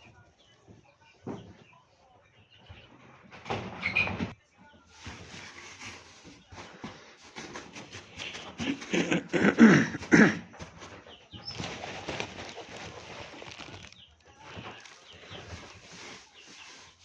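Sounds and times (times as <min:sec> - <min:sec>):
birds calling: 0:08.1 - 0:17.0
rustling: 0:10.6 - 0:17.0.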